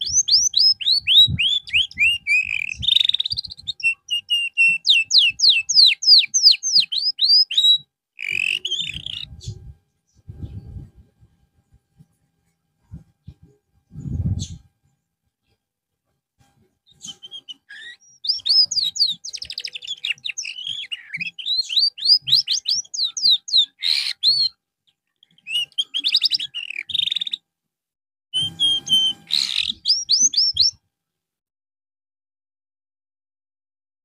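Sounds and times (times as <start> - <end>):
canary singing trills: 0.0 - 10.8, 16.9 - 27.4, 28.4 - 30.8.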